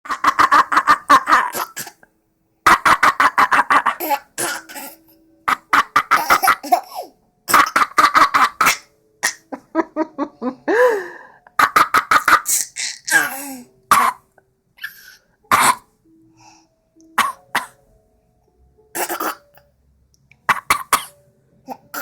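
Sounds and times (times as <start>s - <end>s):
rapid coughing: 0.1s - 2.0s, 2.7s - 9.6s, 10.7s - 15.9s, 17.2s - 17.8s, 19.0s - 19.4s.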